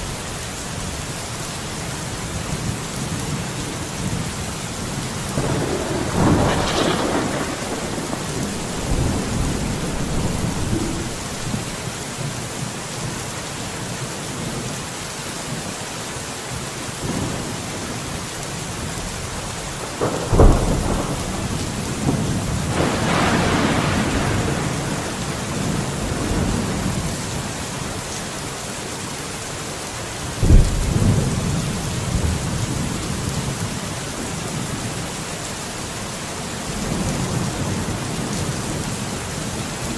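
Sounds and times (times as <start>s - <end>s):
heavy rain: 0.0s - 39.9s
thunder rumbling: 3.3s - 12.1s, 19.8s - 27.2s, 30.4s - 33.2s
sharp thunderclap: 5.3s - 11.9s, 19.9s - 26.9s, 30.4s - 31.6s.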